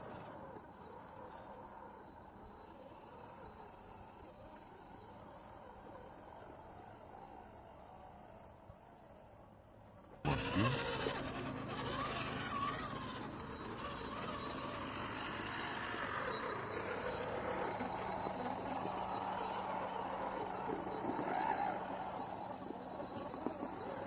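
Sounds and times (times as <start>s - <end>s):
rc car motor whining: 0.0s - 9.4s, 10.0s - 24.0s
steady high-pitched tone: 10.3s - 24.0s.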